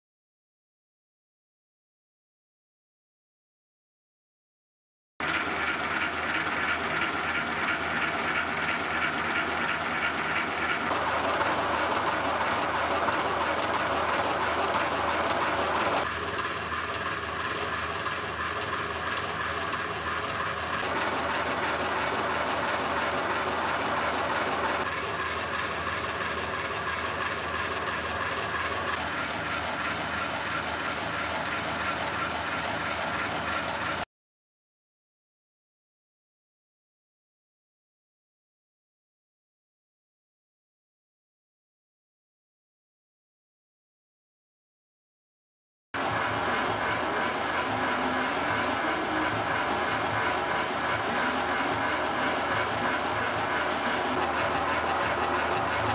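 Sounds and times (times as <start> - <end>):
milling machine whining: 5.2 - 34.0, 46.0 - 55.9.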